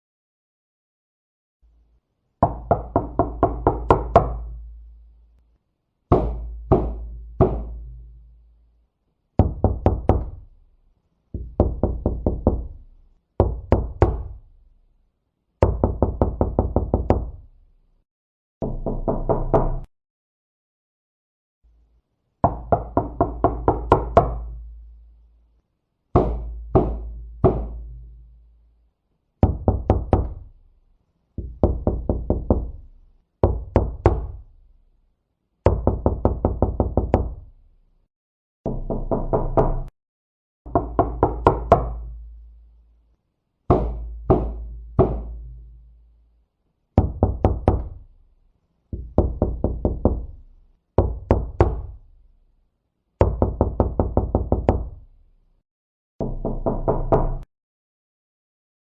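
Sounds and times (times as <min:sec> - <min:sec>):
knocking on a door: 0:02.4 - 0:04.5, 0:06.1 - 0:08.0, 0:09.4 - 0:10.4, 0:11.4 - 0:12.8, 0:13.4 - 0:14.4, 0:15.6 - 0:17.4, 0:18.6 - 0:19.9, 0:22.4 - 0:24.5, 0:26.2 - 0:28.0, 0:29.4 - 0:30.5, 0:31.4 - 0:32.8, 0:33.4 - 0:34.4, 0:35.7 - 0:37.4, 0:38.7 - 0:39.9, 0:40.7 - 0:42.1, 0:43.7 - 0:45.6, 0:47.0 - 0:48.0, 0:48.9 - 0:50.4, 0:51.0 - 0:52.0, 0:53.2 - 0:55.0, 0:56.2 - 0:57.5.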